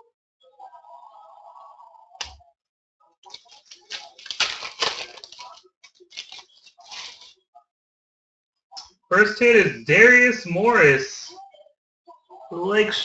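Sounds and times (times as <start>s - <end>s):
wrapper tearing and crinkling: 3.2s - 7.3s.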